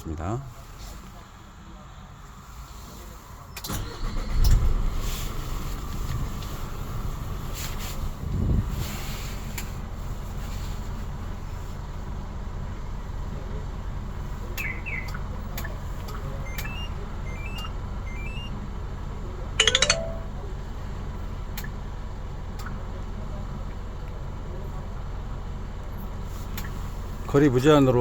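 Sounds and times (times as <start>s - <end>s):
high rising chirps: 16.5s - 18.4s.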